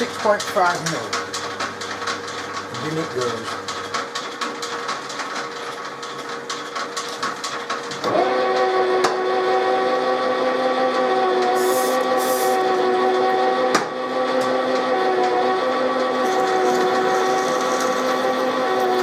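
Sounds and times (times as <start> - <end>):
drill whining into metal: 8.0 - 19.0.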